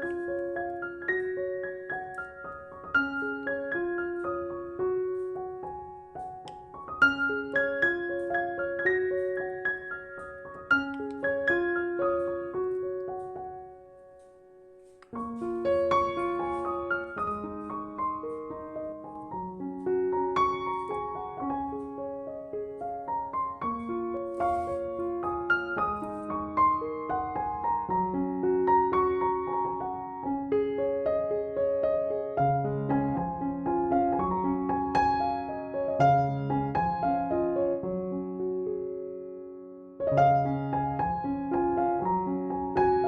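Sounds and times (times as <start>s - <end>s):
gentle piano music: 0.0s - 43.0s.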